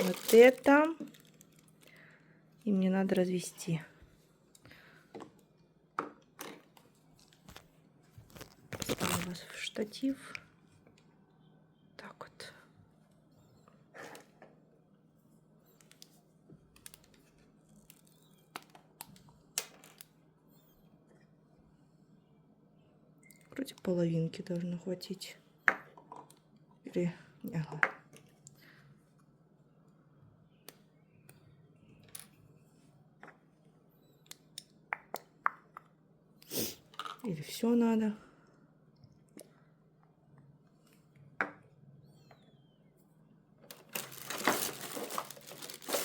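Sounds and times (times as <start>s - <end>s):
faint low hum: 6.7s - 36.5s.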